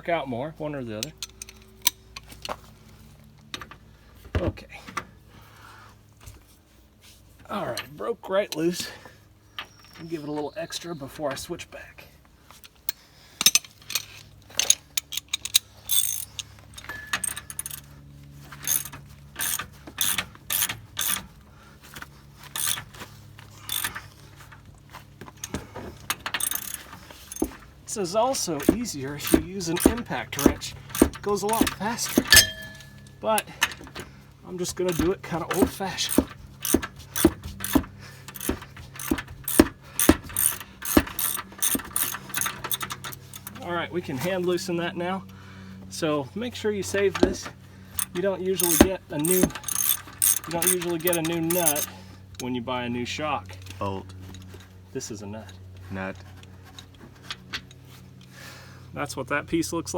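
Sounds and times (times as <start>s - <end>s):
socket ratchet clicking: 18.6s - 21.2s, 22.6s - 22.9s, 23.7s - 24.0s, 26.2s - 27.6s, 28.4s - 33.1s, 34.9s - 43.6s, 48.0s - 51.9s.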